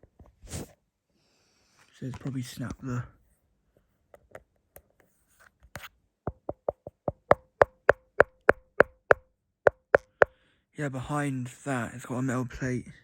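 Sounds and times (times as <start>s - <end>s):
fingers tapping on phone case: 6.3s - 10.4s.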